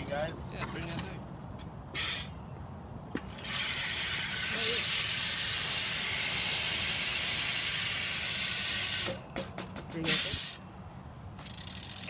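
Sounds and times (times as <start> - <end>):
bicycle hub ratcheting buzz: 1.9 - 2.4, 3.3 - 9.2, 11.4 - 12.0.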